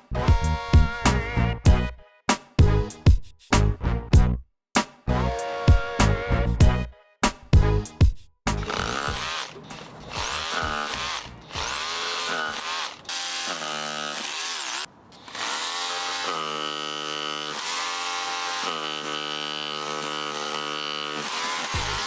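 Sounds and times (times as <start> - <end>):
rotary hammer drill into concrete: 8.5 - 22.0.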